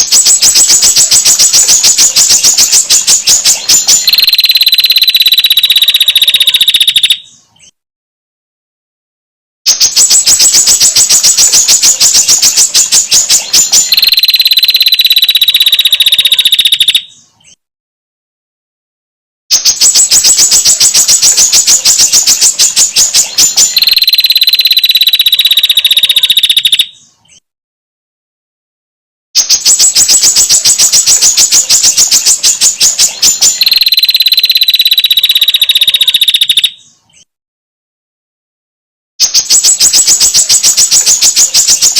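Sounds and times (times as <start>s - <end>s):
bird rattling call: 0.0s - 7.2s, 9.7s - 17.0s, 19.7s - 26.8s, 29.4s - 36.7s, 39.3s - 41.9s.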